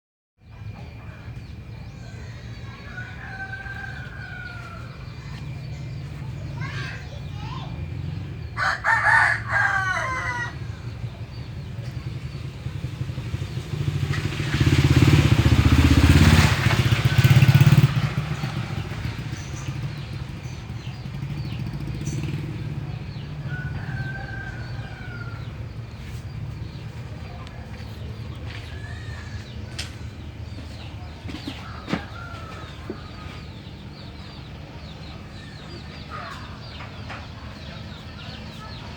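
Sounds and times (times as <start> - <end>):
rooster crowing: 2.2 - 5.1, 8.6 - 10.8, 23.4 - 25.6.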